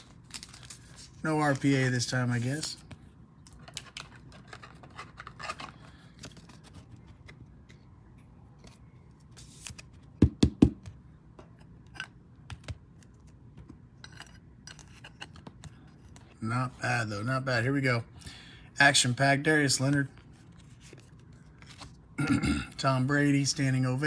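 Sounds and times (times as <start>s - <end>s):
cards scraping and rustling: 0.0s - 7.9s, 8.5s - 10.1s, 12.5s - 16.4s, 19.8s - 22.0s.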